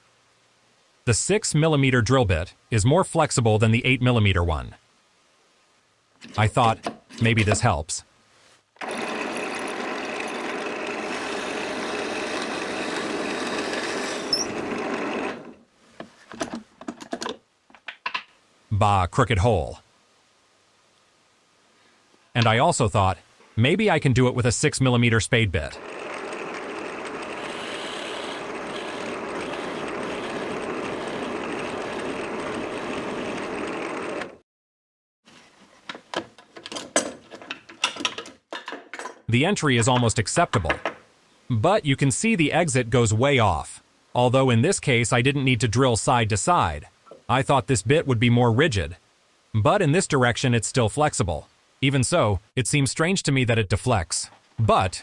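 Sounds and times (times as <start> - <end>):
drill press whirring into wood: 8.8 - 15.6, 25.8 - 34.4.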